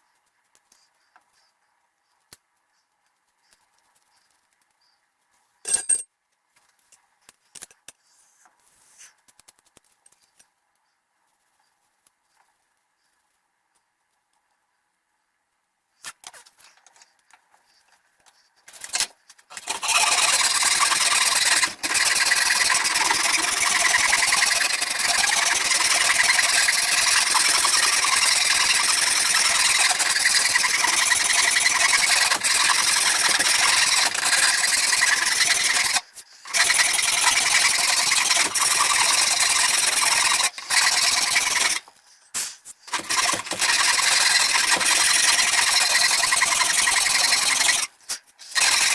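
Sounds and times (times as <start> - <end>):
power sander rasping wood: 19.5 - 41.9, 42.9 - 47.9, 48.5 - 48.9.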